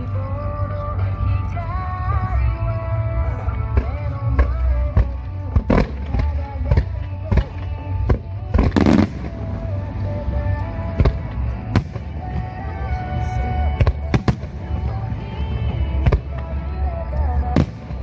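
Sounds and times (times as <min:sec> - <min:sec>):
pop song with singing: 0:00.0 - 0:18.0
fireworks bursting: 0:03.8 - 0:18.0.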